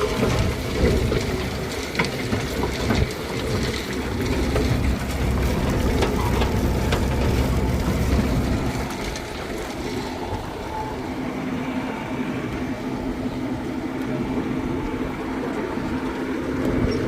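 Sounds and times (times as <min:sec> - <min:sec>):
seed drill rattling and clicking: 0:00.0 - 0:10.1
tractor engine rumble: 0:00.0 - 0:17.0.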